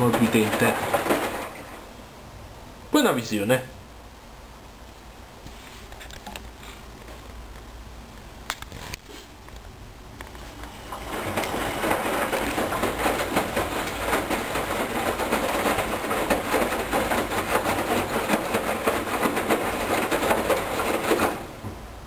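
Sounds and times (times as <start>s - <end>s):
washing machine drum sloshing: 0.0s - 2.3s, 10.4s - 22.0s.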